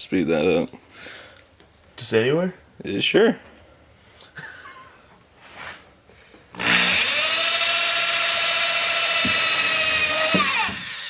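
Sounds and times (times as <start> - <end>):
power drill whining: 6.5 - 11.0.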